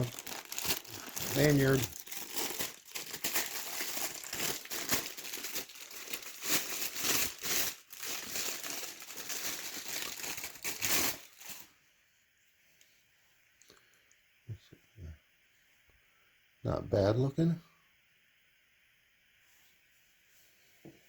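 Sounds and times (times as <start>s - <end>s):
plastic packaging crinkling: 0.0s - 11.8s.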